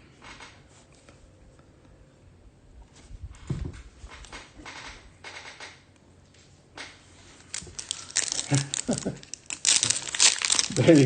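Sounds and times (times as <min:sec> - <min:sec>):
card pack wrappers crinkling: 0:07.4 - 0:11.0
cards being handled: 0:07.4 - 0:11.0.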